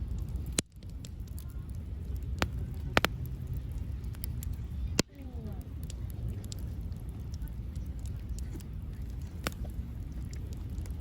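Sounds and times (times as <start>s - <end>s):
campfire crackling and popping: 0.0s - 11.0s
steady low rumble: 0.0s - 11.0s.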